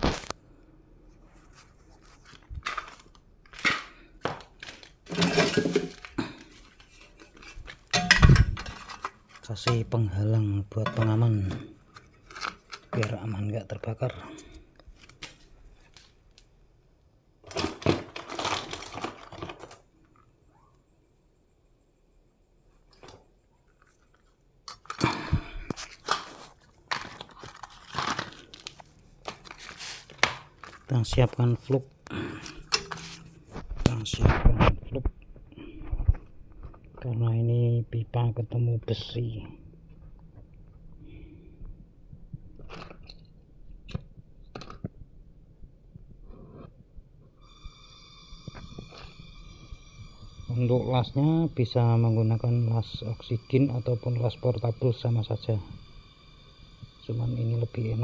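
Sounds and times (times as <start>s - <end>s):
tools handled crunching and knocking: 1.5s - 13.3s, 17.4s - 19.9s, 24.7s - 33.8s
metal tools clinking and knocking: 4.6s - 9.8s, 10.8s - 13.1s, 32.6s - 33.3s
metal clatter: 5.1s - 9.4s.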